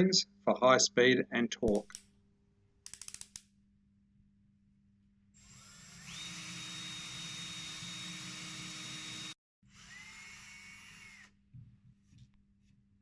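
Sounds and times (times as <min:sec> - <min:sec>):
drill motor whine: 0:05.4 - 0:11.4.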